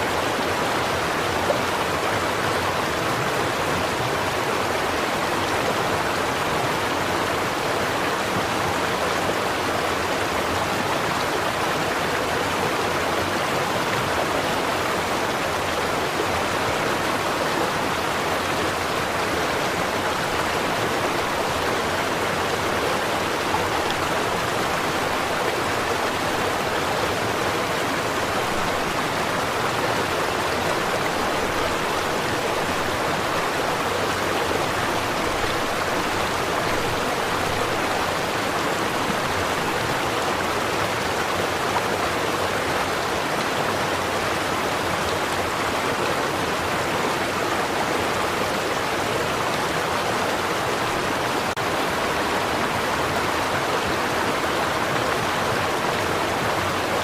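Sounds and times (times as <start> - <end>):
stream water flowing: 0.0 - 57.0.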